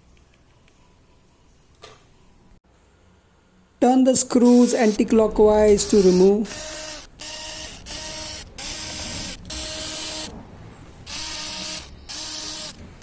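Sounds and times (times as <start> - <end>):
electric screwdriver whirring: 5.8 - 10.4, 11.1 - 13.0.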